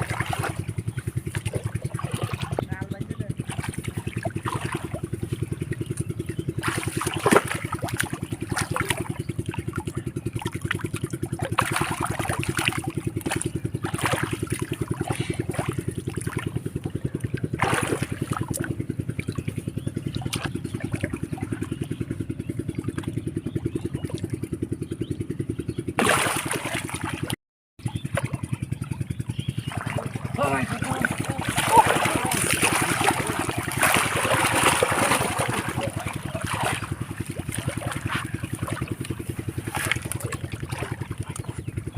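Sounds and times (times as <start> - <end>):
small engine running: 0.0 - 41.9.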